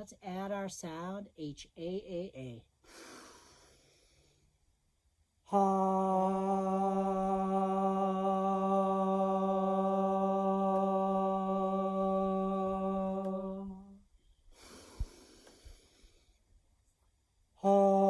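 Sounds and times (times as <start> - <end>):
person holding long vocal tone: 5.5 - 14.0, 17.6 - 18.0.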